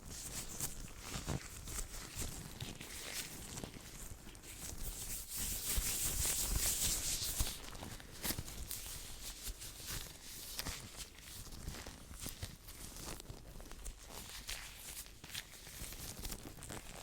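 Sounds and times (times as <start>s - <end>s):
hands rubbing together: 4.4s - 9.4s.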